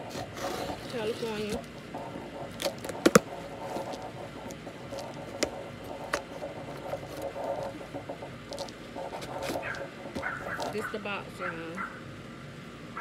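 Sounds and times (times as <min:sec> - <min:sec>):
cardboard packaging rustling: 0:02.5 - 0:07.8, 0:08.5 - 0:10.9.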